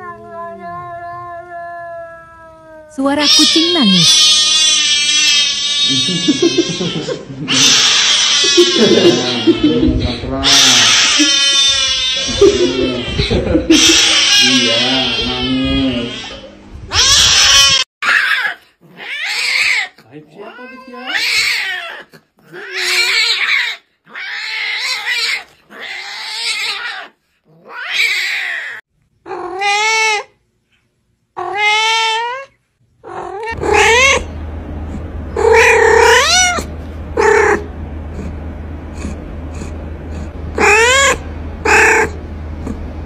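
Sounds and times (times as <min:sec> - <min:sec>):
cat meowing: 0:00.0 - 0:07.0, 0:07.6 - 0:09.7, 0:10.4 - 0:30.3, 0:31.4 - 0:34.3, 0:35.4 - 0:37.6, 0:40.6 - 0:42.2
steady low hum: 0:08.5 - 0:17.0, 0:32.8 - 0:43.0.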